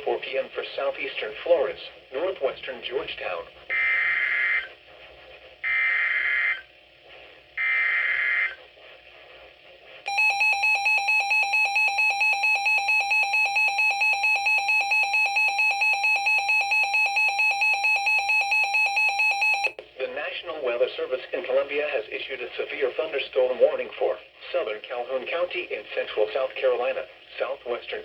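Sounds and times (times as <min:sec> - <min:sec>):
rapid pulsing alarm beep: 0:10.1 - 0:19.8.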